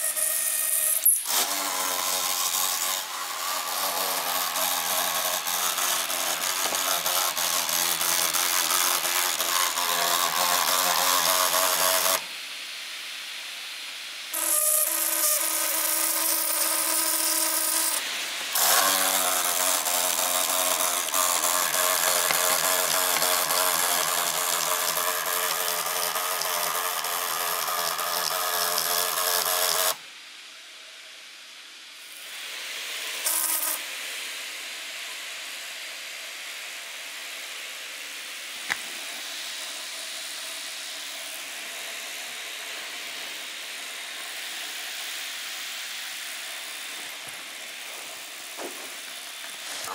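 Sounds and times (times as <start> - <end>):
laptop fan grinding and whining: 0.0 - 12.3, 14.4 - 30.0.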